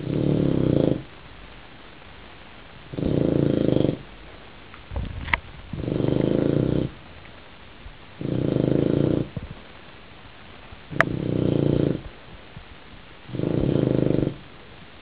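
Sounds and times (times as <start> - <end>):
dog snoring: 0.0 - 1.1, 2.9 - 4.1, 5.7 - 7.0, 8.2 - 9.6, 10.9 - 12.2, 13.3 - 14.5.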